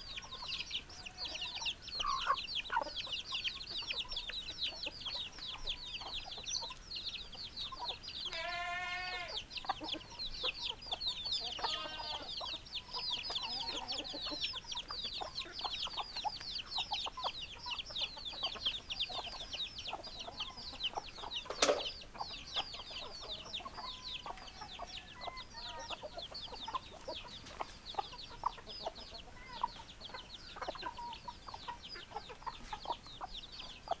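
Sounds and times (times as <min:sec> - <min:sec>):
chickens clucking: 0:00.0 - 0:34.0
chicks peeping: 0:00.0 - 0:34.0
drawn-out chicken call: 0:07.7 - 0:34.0.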